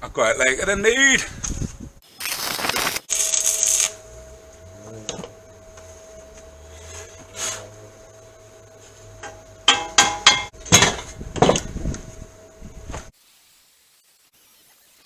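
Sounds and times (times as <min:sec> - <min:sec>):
faint steady hum: 0:01.7 - 0:14.1
sharp metallic knocks: 0:09.2 - 0:11.6.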